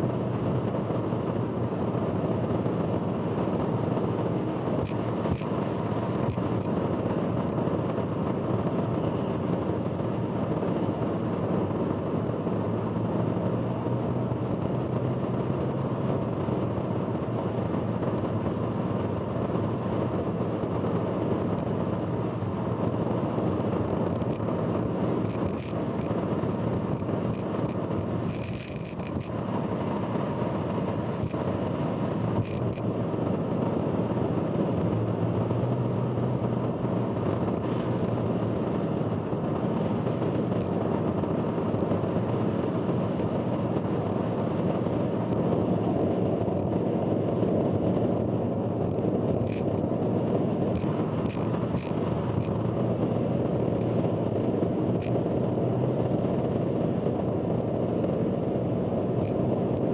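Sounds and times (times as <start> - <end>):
road and tyre rumble: 0.0 - 59.9
sharp clicks and rattles: 24.0 - 29.4, 30.7 - 31.5, 32.1 - 32.9, 48.2 - 49.9, 50.7 - 52.7.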